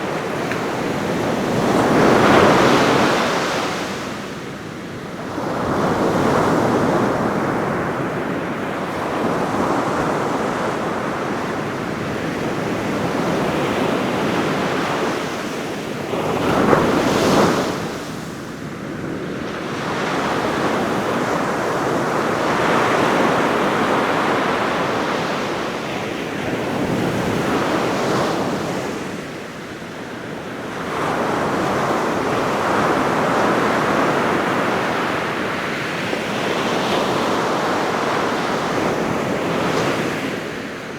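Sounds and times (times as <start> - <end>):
ocean surf breaking on beach: 0.0 - 40.9.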